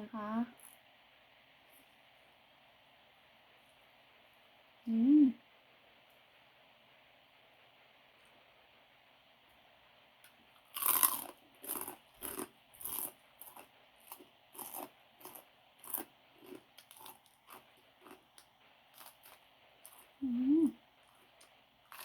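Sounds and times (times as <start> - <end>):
person chewing crunchy food: 10.6 - 20.2, 21.0 - 22.0.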